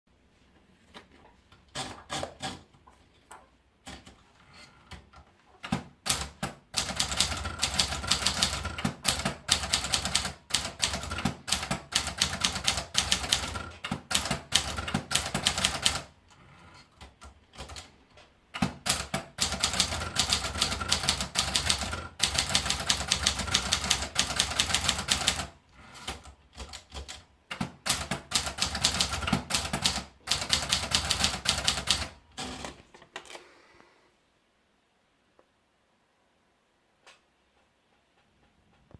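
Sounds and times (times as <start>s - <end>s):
typewriter keys clacking: 5.6s - 16.1s, 18.6s - 33.4s.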